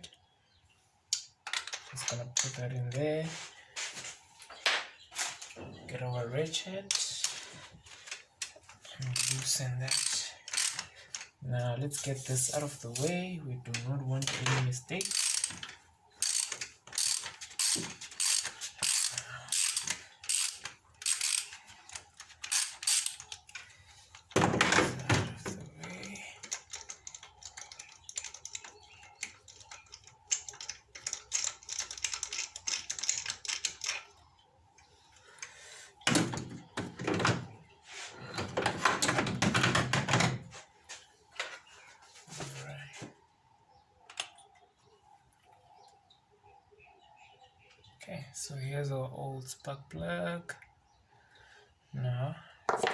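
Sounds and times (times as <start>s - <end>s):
hand ratchet clicking: 9.1s - 10.9s, 15.0s - 23.6s.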